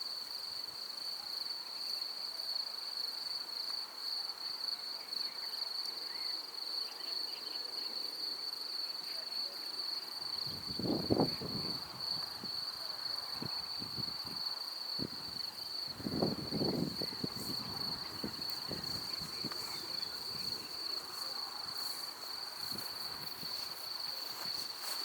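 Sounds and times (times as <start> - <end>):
crickets trilling: 0.1 - 25.0.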